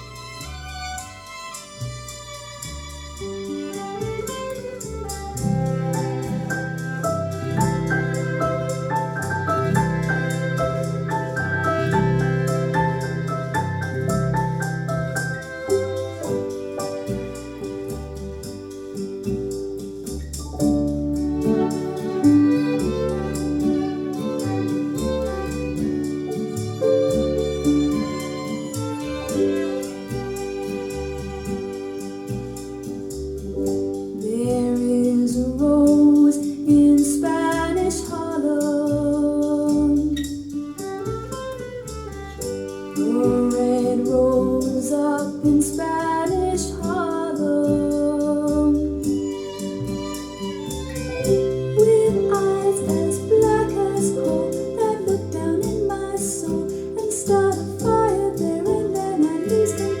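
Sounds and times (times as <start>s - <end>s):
steady beat: 0.0s - 33.2s
held instrumental notes: 0.0s - 60.0s
recorded music with bass line: 0.0s - 60.0s
woman singing: 34.1s - 40.3s, 43.0s - 49.2s, 51.8s - 60.0s.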